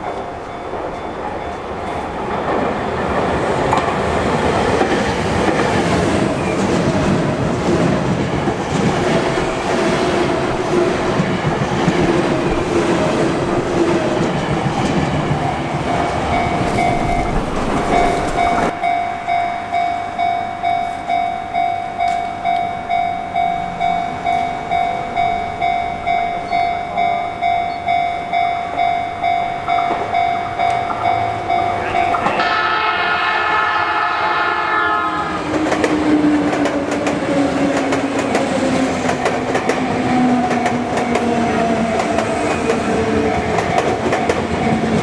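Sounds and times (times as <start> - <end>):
electric train passing: 0.0 - 45.0.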